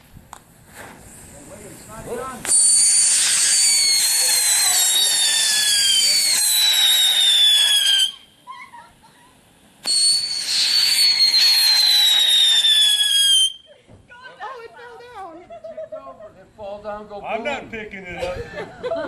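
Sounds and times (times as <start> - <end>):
whistling firework screeching: 2.2 - 13.8.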